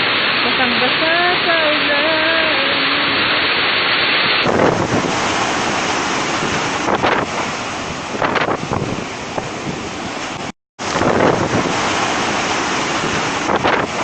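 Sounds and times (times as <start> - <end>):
storm wind buffeting microphone: 4.2 - 14.0.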